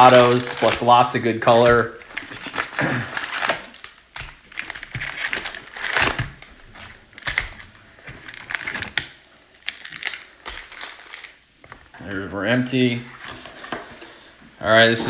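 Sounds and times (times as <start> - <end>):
packaging crinkling: 0.0 - 12.0.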